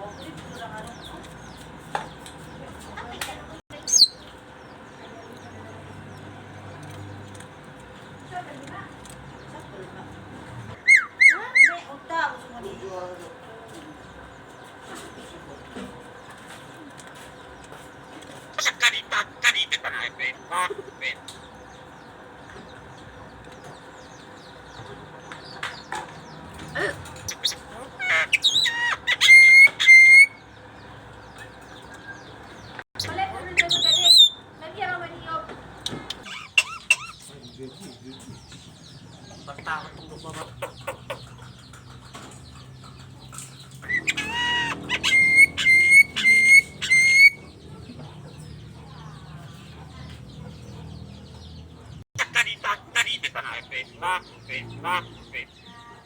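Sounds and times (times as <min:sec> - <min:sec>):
starling chirps and clicks: 0:00.2 - 0:11.8, 0:16.2 - 0:56.0
starling imitating hen calls: 0:18.6 - 0:21.3, 0:26.6 - 0:30.4, 0:43.7 - 0:47.5, 0:52.2 - 0:55.7
starling whistling: 0:27.3 - 0:30.4, 0:43.8 - 0:47.5.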